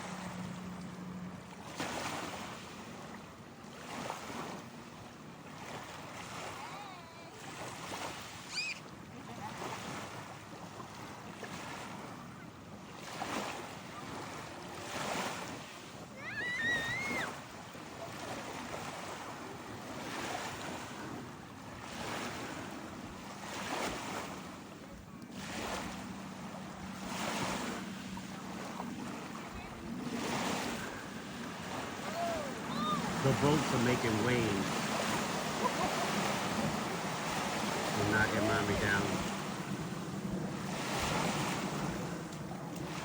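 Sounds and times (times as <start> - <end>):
small waves breaking: 0.0 - 43.0.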